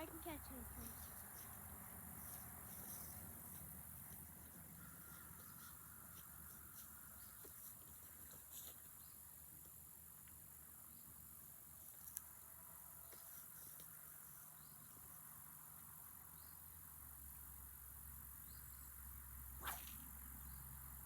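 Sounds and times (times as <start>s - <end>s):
faint insect chorus: 0.0s - 21.0s
faint ticks: 11.8s - 14.0s.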